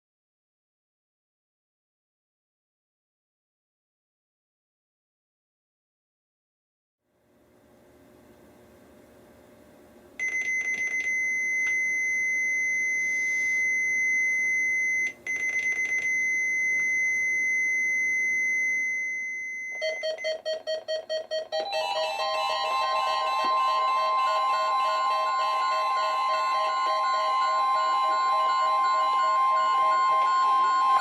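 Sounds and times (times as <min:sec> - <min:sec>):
rapid beeping and chiming alarms: 0:18.4 - 0:31.0
steady high-pitched beeper tone: 0:21.6 - 0:31.0.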